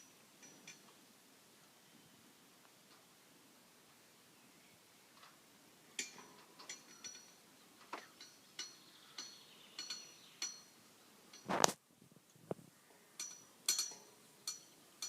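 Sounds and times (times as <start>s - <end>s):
ringing clinks and knocks: 6.0s - 7.4s, 8.1s - 11.5s, 13.2s - 14.8s.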